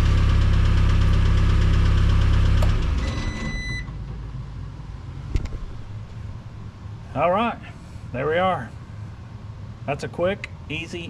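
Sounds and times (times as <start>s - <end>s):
loader engine running: 0.0s - 9.8s.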